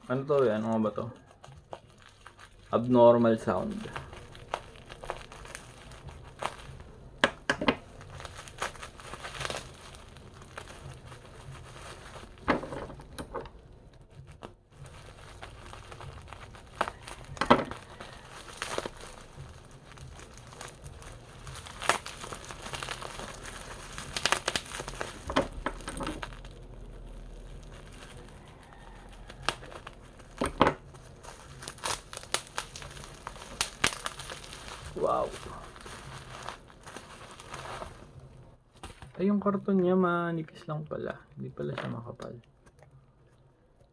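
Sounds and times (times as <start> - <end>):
packaging crinkling: 0.0 - 39.8.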